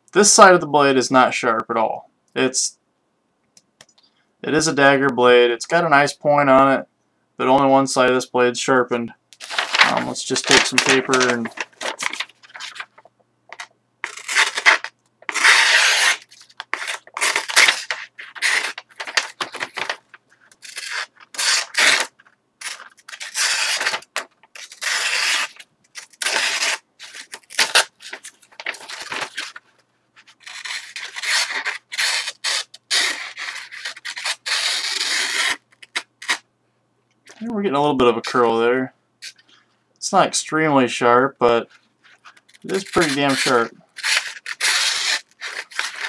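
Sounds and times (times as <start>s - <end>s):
knife slicing paper: 14.0s - 20.0s, 20.6s - 29.6s, 30.4s - 36.4s, 42.6s - 46.0s.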